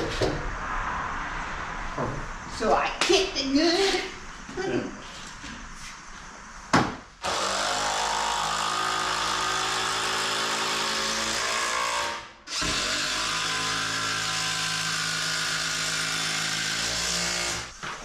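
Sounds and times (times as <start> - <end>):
sharp knock: 6.7 - 7.0
power drill running: 7.2 - 17.7.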